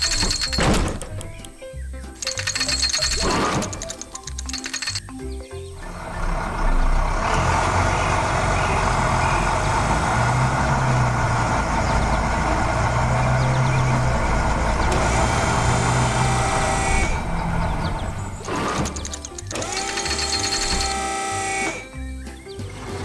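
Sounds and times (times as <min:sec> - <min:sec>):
heavy truck engine running: 0:00.0 - 0:01.6, 0:02.2 - 0:23.0.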